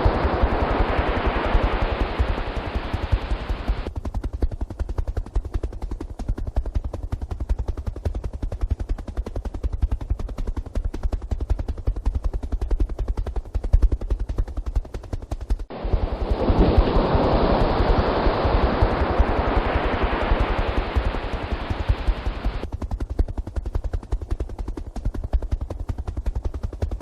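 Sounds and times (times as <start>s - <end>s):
windy hiss: 0.0s - 3.9s, 15.7s - 22.7s
helicopter rotor blades chopping: 0.0s - 27.0s.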